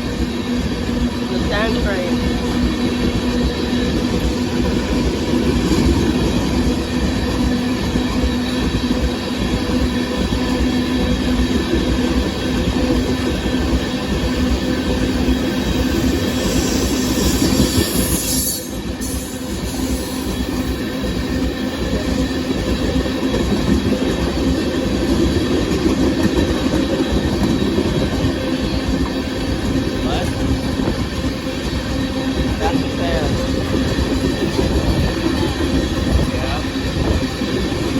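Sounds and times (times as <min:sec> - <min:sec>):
train wheels rumbling on rails: 0:00.0 - 0:37.9.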